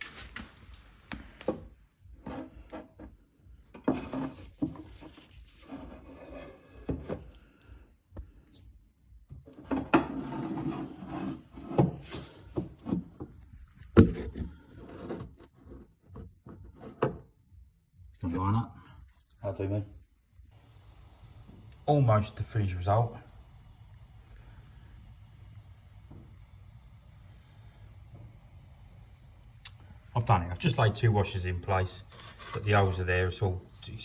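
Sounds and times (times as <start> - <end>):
metal scraping and rubbing: 3.8 - 7.1, 9.6 - 13.0, 31.8 - 33.9.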